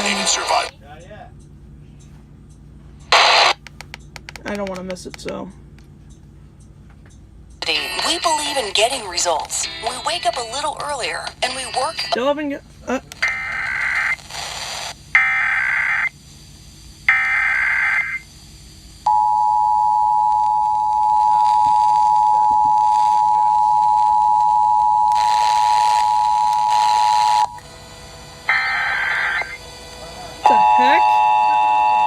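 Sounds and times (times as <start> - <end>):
two-tone attention signal: 19.1 - 27.6, 30.4 - 32.0
data bursts: 28.4 - 32.0.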